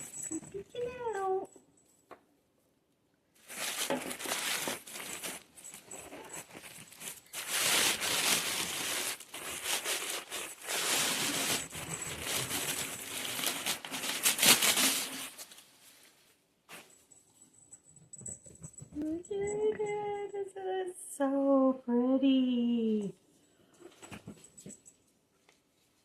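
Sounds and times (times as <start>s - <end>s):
packing material crinkling: 3.4s - 16.3s.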